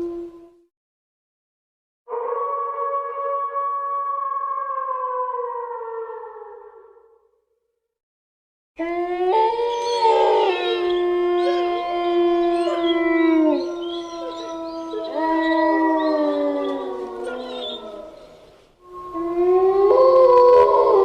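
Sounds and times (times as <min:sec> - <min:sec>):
wolves howling: 0:08.8 - 0:21.0.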